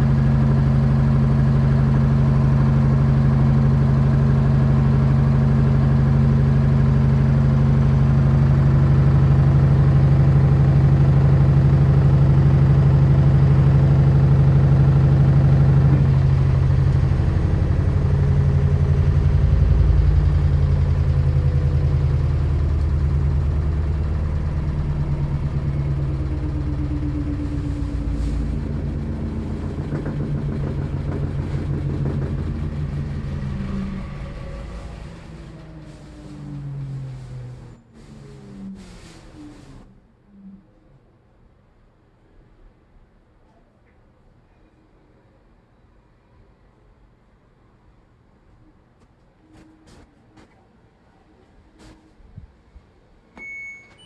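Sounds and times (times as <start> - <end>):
washing machine low drone: 0.0 - 41.4.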